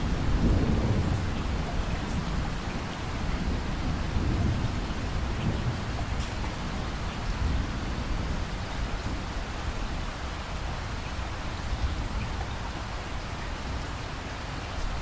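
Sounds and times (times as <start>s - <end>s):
low rumble of thunder: 0.0s - 10.1s
steady rain falling: 0.0s - 15.0s.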